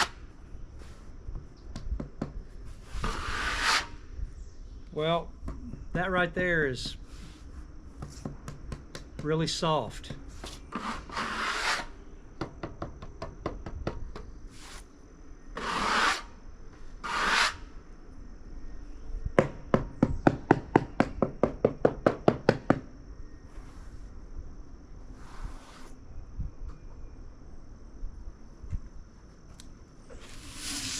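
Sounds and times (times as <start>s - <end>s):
sharp taps on wood: 8.0s - 9.4s
scraping on wood: 10.4s - 11.9s, 15.6s - 16.3s, 17.0s - 17.6s.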